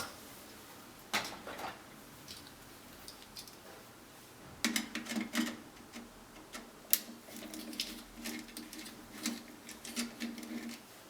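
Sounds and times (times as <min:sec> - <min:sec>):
clicks and taps of tools on wires: 0:04.6 - 0:10.8.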